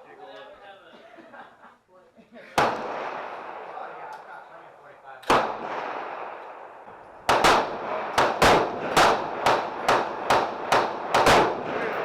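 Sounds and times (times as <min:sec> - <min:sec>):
gunshots with echo: 0:02.6 - 0:04.4, 0:05.2 - 0:12.0.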